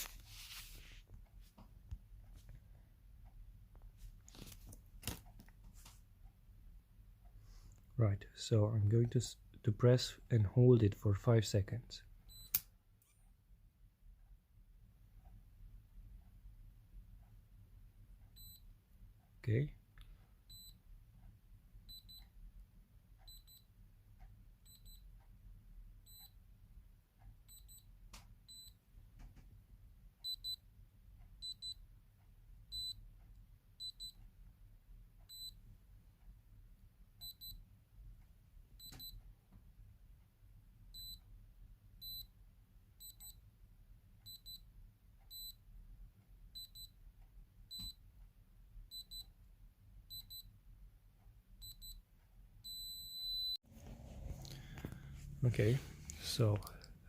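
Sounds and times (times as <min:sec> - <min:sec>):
padlock high double beeps: 0:30.2 - 0:30.6, 0:31.4 - 0:31.8, 0:32.7 - 0:33.0, 0:41.0 - 0:41.2, 0:42.0 - 0:42.3, 0:43.0 - 0:43.4, 0:45.3 - 0:45.6, 0:46.6 - 0:46.9, 0:47.7 - 0:48.0, 0:48.9 - 0:49.3, 0:50.1 - 0:50.5, 0:52.7 - 0:53.6.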